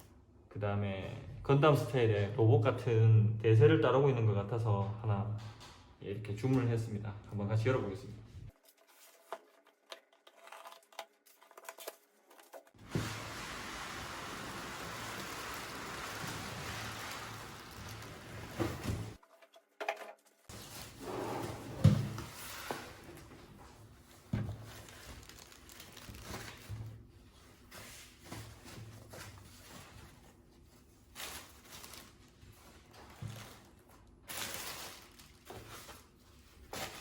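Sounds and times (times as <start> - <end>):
packing rustling: 8.5 - 19.2, 24.5 - 26.8, 31.1 - 37.0.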